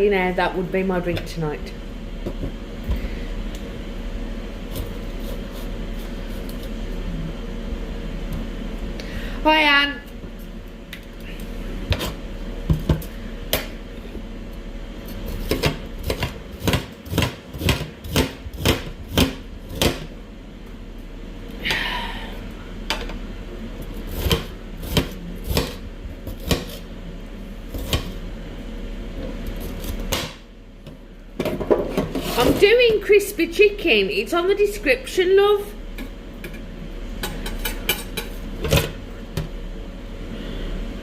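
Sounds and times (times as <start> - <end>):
knife scraping board: 4.7 - 6.8, 24.1 - 26.9, 31.9 - 32.7
knife chopping on board: 15.4 - 20.1, 24.2 - 26.8.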